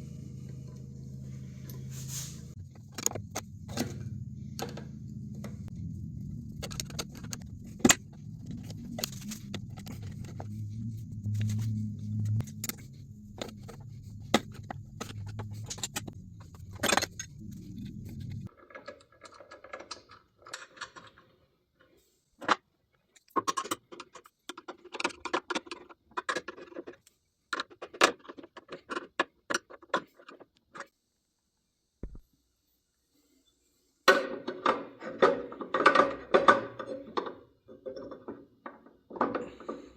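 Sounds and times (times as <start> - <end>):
low machine hum: 0.0 - 18.5.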